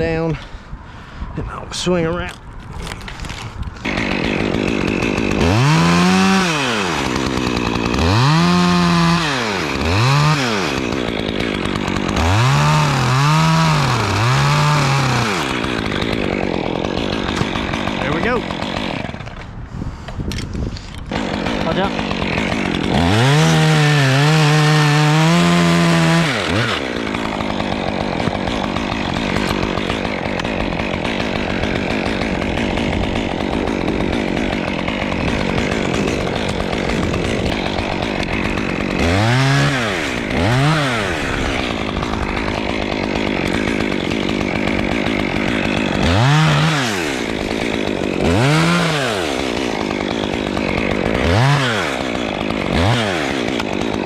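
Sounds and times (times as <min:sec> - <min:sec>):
chainsaw revving: 0:02.8 - 0:19.5, 0:20.3 - 0:54.0.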